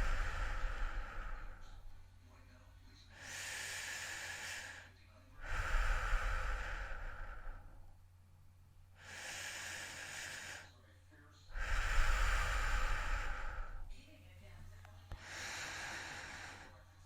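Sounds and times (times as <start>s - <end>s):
person breathing heavily: 0.0s - 2.0s, 3.1s - 7.9s, 9.0s - 10.8s, 11.5s - 14.0s, 15.1s - 17.0s.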